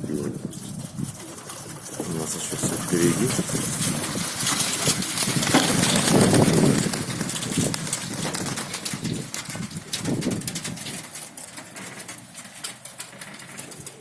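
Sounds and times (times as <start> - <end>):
wind gusting on microphone: 0.0 - 11.1
pigeons cooing: 0.0 - 14.0.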